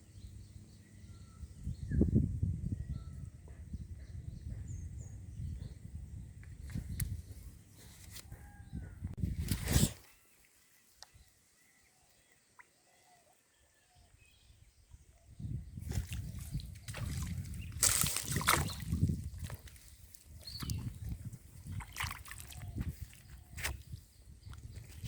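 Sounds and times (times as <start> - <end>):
faint bird chirps: 0.1 - 5.8
water sloshing and splashing: 15.8 - 23.9.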